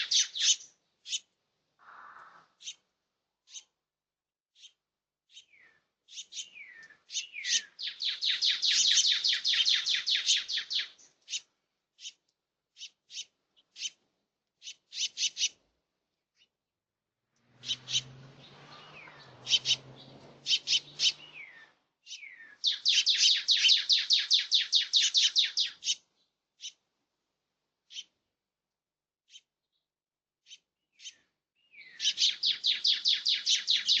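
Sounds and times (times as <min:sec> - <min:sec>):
small songbird singing: 0:00.0 - 0:02.8, 0:03.4 - 0:03.7, 0:04.5 - 0:14.0, 0:14.6 - 0:15.6, 0:17.5 - 0:26.8, 0:27.9 - 0:28.1, 0:29.2 - 0:34.0.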